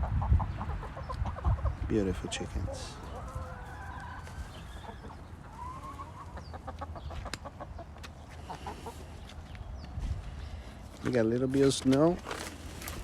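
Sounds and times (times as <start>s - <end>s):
drawn-out chicken call: 0.0s - 9.2s
chickens clucking: 0.0s - 9.9s.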